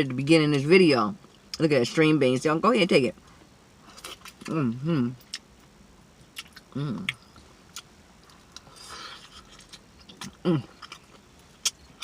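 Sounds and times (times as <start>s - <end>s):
mouth smacking and chewing: 6.4s - 12.0s.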